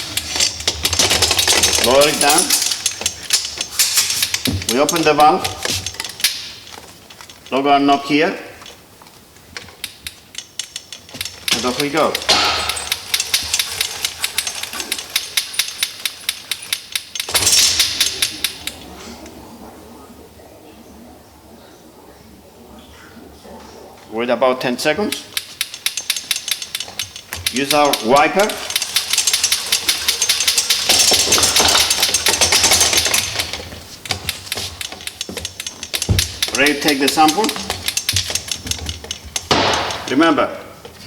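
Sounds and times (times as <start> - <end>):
winder clicking: 0.0 - 8.0, 8.6 - 19.4, 24.9 - 40.3
rustling burst: 10.2 - 19.3, 25.3 - 40.3.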